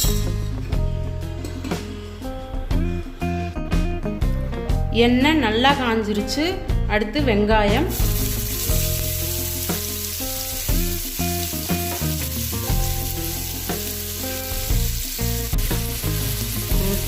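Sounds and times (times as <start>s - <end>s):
instrumental background music: 0.0s - 17.0s
onions sizzling in hot oil: 7.9s - 17.0s.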